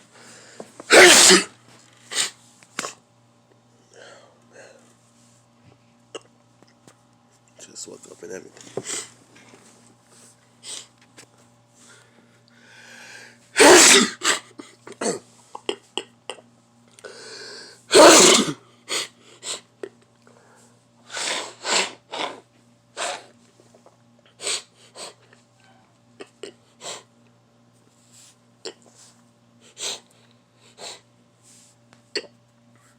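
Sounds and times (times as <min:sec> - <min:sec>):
person sneezing: 0:00.8 - 0:01.5, 0:02.1 - 0:03.0, 0:13.6 - 0:15.3, 0:17.9 - 0:19.6, 0:21.1 - 0:22.4, 0:23.0 - 0:23.3.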